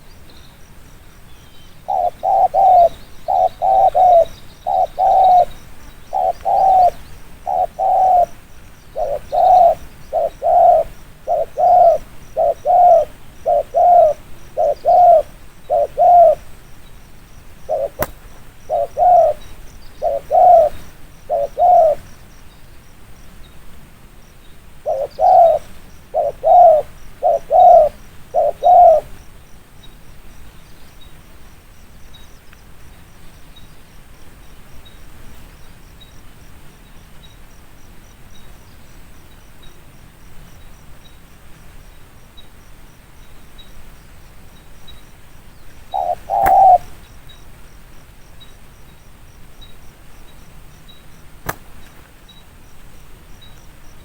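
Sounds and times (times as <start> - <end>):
dove cooing: 1.8 - 16.5, 17.6 - 22.0, 24.8 - 29.1, 45.9 - 47.0.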